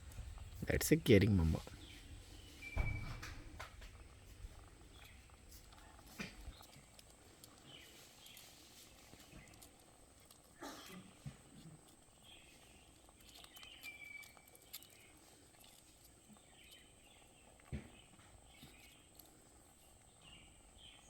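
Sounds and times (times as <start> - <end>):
low thump: 1.6 - 5.0.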